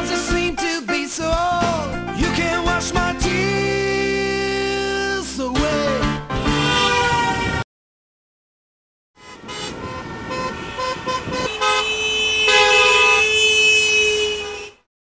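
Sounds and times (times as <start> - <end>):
street noise: 6.3 - 7.6, 9.2 - 14.9
vehicle horn honking: 6.5 - 7.6, 9.2 - 14.9.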